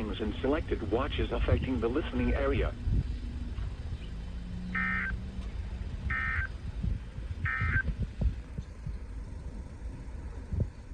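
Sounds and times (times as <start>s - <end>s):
low rumble: 0.0s - 10.9s
buzzy digital data tone: 6.1s - 6.5s, 7.4s - 7.9s.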